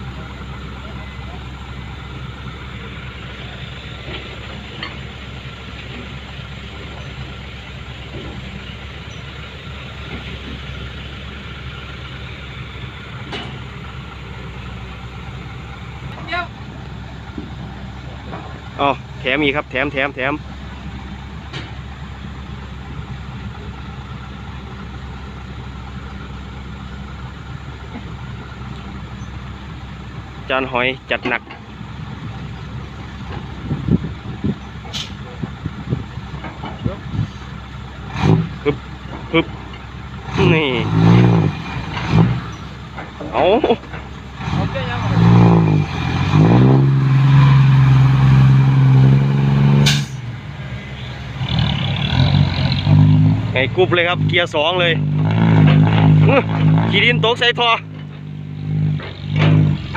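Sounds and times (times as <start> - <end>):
truck engine rumbling: 0.0 - 59.9.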